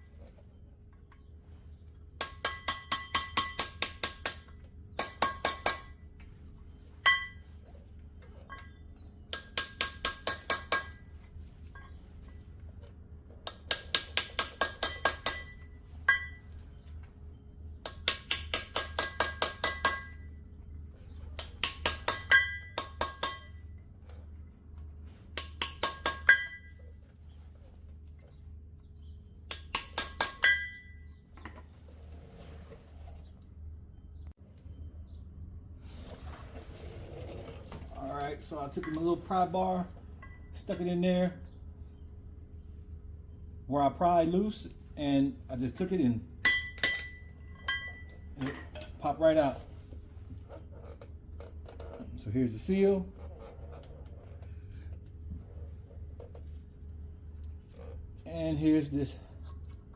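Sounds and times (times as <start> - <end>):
pry bar tapping metal: 2.2 - 6.3, 8.5 - 11.1, 13.4 - 16.4, 17.8 - 20.4, 21.4 - 23.7, 24.8 - 26.8, 29.4 - 31.6, 46.4 - 49.0.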